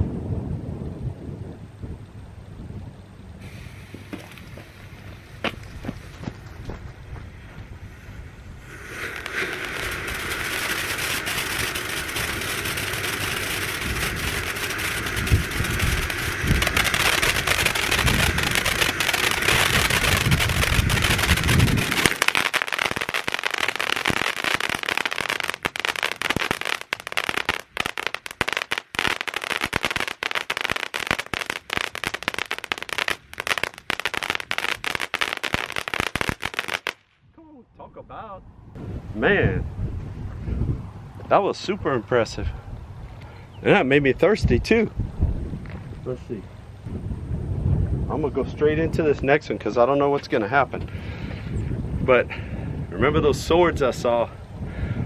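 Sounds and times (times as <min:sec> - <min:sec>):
rapid crackling pops: 0:03.4 - 0:07.8, 0:08.6 - 0:37.1
firework fountain hissing: 0:03.4 - 0:37.0.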